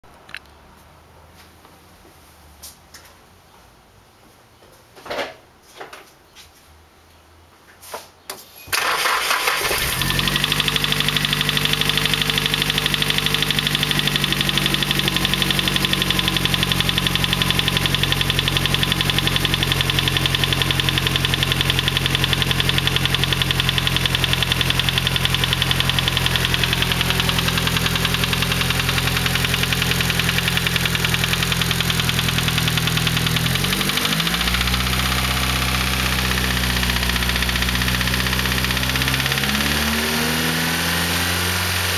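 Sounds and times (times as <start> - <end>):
car engine idling with knock: 9.8 - 40.7.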